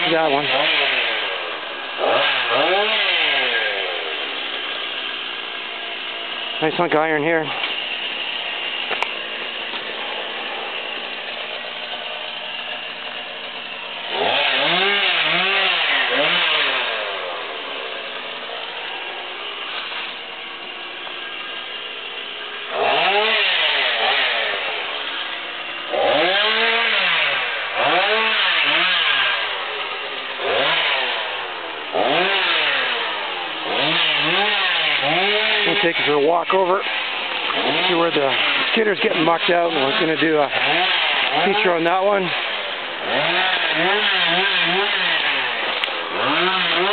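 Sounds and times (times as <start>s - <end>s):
chainsaw cutting brush: 0.0s - 46.9s.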